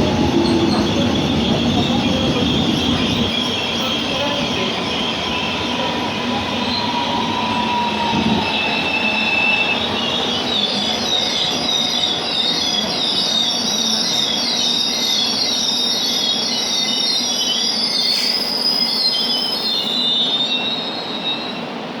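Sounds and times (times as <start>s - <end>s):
train rumbling: 0.0s - 14.6s
train wheels squealing on rails: 0.0s - 22.0s.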